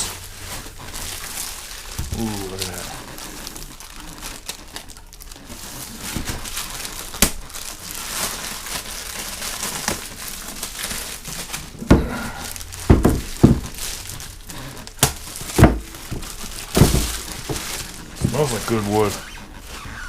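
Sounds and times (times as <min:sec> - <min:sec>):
packaging crinkling and rustling: 0:00.0 - 0:20.0.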